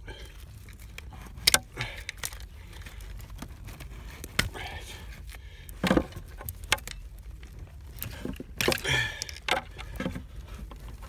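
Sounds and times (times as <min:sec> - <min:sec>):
low steady hum: 0:00.0 - 0:11.0
sharp clicks and knocks: 0:07.9 - 0:10.8.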